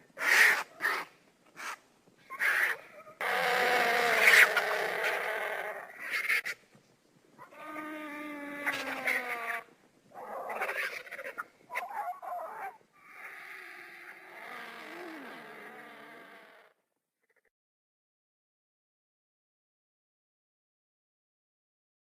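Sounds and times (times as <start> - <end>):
vulture calls: 0.0 - 6.6, 7.4 - 16.8.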